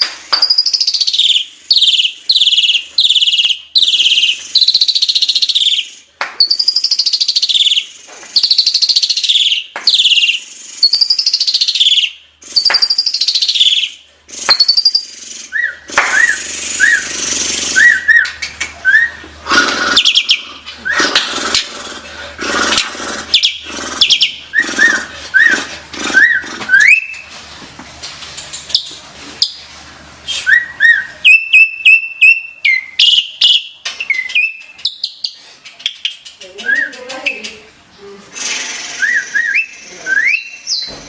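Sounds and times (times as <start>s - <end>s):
starling whistling song: 0.3s - 19.2s, 19.8s - 21.2s, 23.3s - 27.3s, 30.2s - 37.6s, 39.0s - 41.0s
bird harsh chattering: 0.4s - 18.3s, 18.9s - 27.1s.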